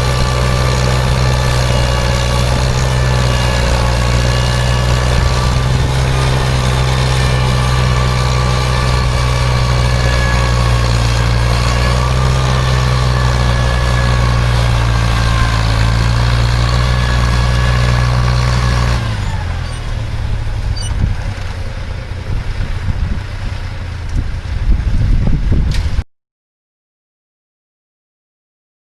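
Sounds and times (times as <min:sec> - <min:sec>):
wind buffeting microphone: 0:00.0 - 0:10.7, 0:20.0 - 0:26.0
farm machine engine running: 0:00.0 - 0:26.0.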